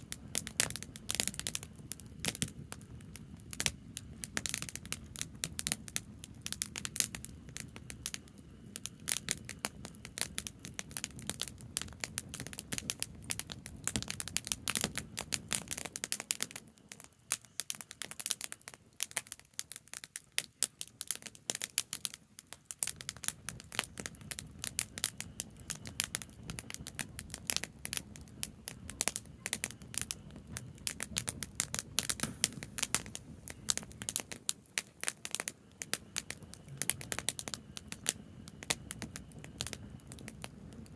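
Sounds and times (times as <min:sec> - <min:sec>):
campfire crackling and popping: 0:00.0 - 0:40.9
low background rumble: 0:24.0 - 0:40.9.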